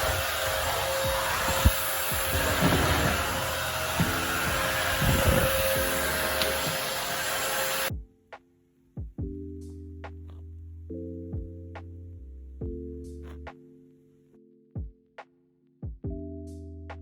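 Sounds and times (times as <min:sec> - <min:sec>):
vacuum cleaner motor whine: 0:00.0 - 0:07.9.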